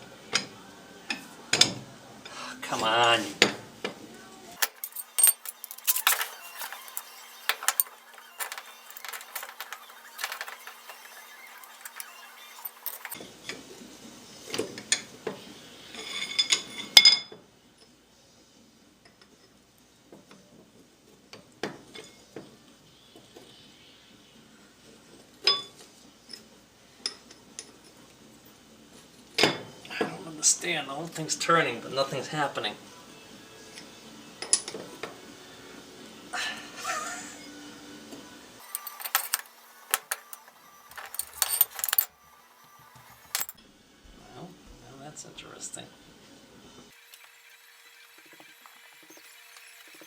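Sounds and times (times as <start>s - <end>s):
metal clinks and knocks: 4.6s - 13.2s, 38.6s - 43.6s.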